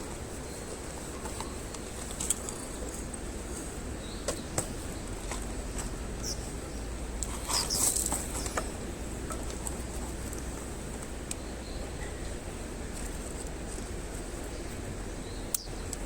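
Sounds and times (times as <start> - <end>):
low outdoor rumble: 0.0 - 16.0.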